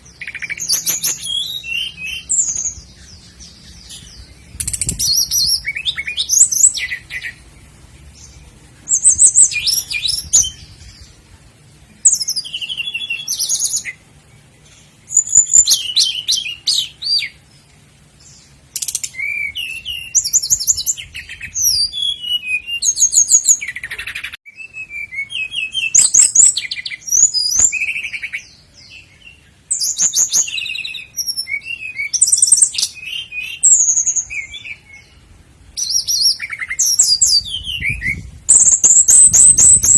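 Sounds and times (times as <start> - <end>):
nightingale singing: 0.0 - 39.9.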